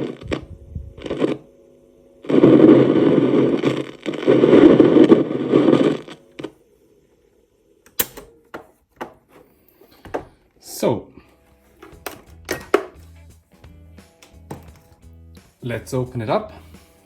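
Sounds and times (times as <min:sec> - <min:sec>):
speaker static crackling: 0:00.0 - 0:08.4
faint steady hum: 0:00.0 - 0:12.7.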